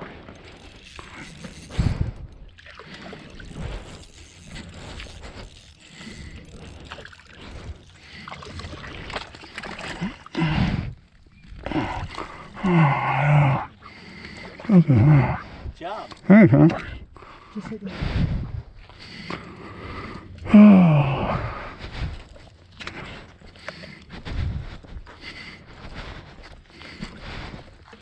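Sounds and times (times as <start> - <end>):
water sloshing and splashing: 0.0 - 28.0
drawn-out voice sound: 16.3 - 16.8.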